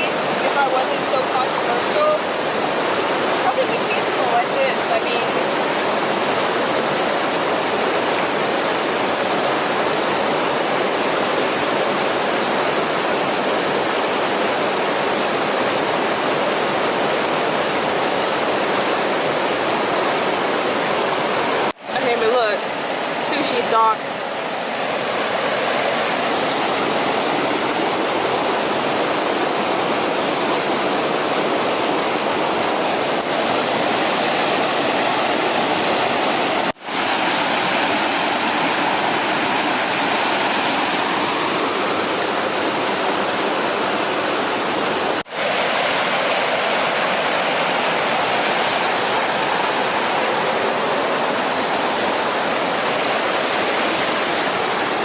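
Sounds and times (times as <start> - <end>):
flowing water rushing: 0.0 - 55.0.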